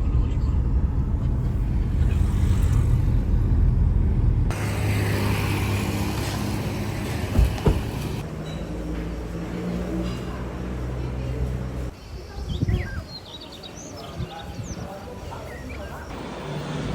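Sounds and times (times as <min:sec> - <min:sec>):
vehicle engine hum: 0:00.0 - 0:12.0, 0:16.0 - 0:16.9
road noise: 0:00.0 - 0:16.9.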